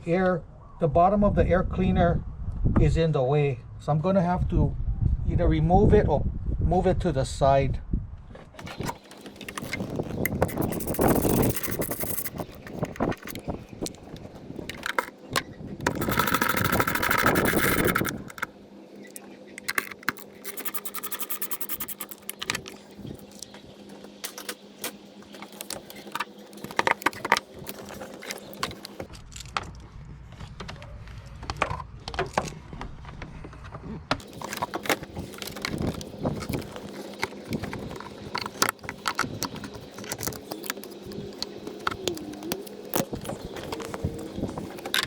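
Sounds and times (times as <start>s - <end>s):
plastic parts clicking and rattling: 8.6s - 29.7s, 34.2s - 45.0s.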